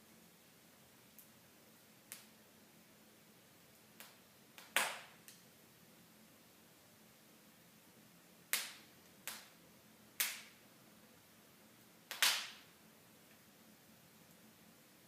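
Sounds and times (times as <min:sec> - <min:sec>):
faint steady hiss: 0:00.0 - 0:15.0
wood fire popping: 0:02.1 - 0:02.4, 0:03.7 - 0:05.5, 0:08.5 - 0:10.6, 0:12.0 - 0:12.7.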